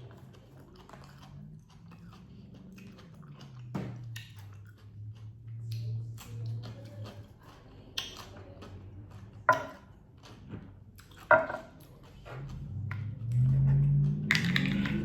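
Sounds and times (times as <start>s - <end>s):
tableware clinking on table: 9.5s - 9.8s, 11.3s - 11.7s.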